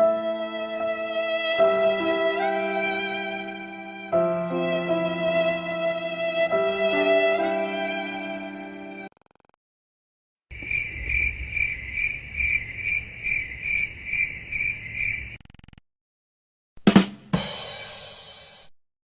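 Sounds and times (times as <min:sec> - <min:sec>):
crickets chirping: 0:10.5 - 0:15.4.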